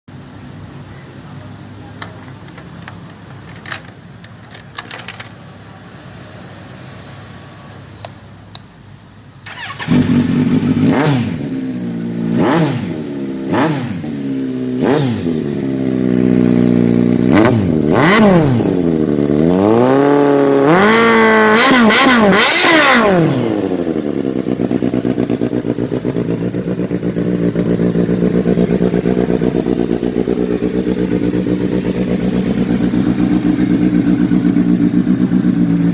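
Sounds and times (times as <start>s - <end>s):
clicks: 1.9s - 5.4s
motorcycle engine revving: 9.4s - 35.9s.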